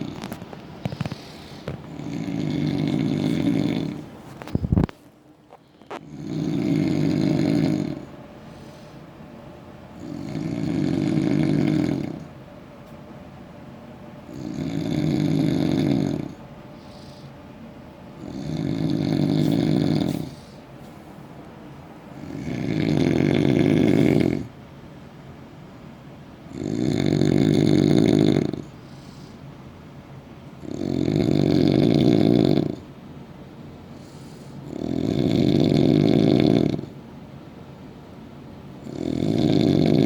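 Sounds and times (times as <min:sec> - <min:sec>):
heavy rasping snores: 0:01.9 - 0:04.0, 0:05.9 - 0:08.1, 0:10.0 - 0:12.3, 0:14.3 - 0:16.4, 0:18.2 - 0:20.6, 0:22.2 - 0:24.5, 0:26.5 - 0:28.7, 0:30.6 - 0:32.9, 0:34.6 - 0:36.9, 0:38.8 - 0:40.0.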